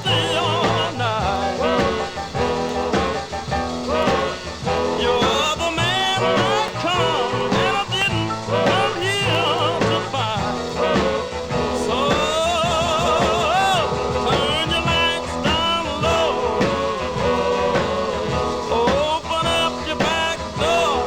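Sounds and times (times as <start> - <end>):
upbeat song with sung vocals: 0.0 - 21.0.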